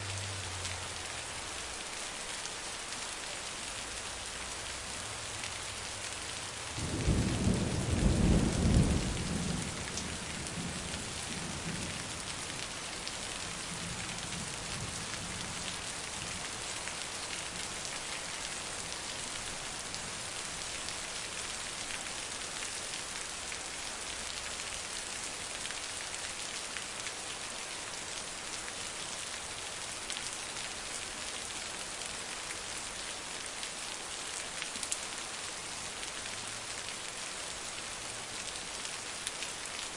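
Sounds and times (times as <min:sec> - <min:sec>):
heavy rain falling: 0:00.0 - 0:39.9
thunder clap rumbling: 0:06.8 - 0:11.9.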